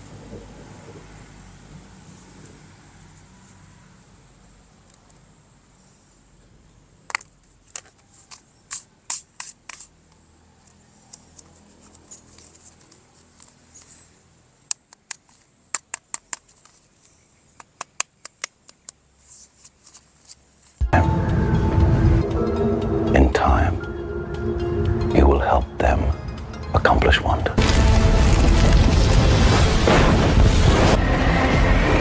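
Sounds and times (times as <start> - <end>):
plastic toy parts clicking: 7.0 - 14.0, 14.6 - 20.4.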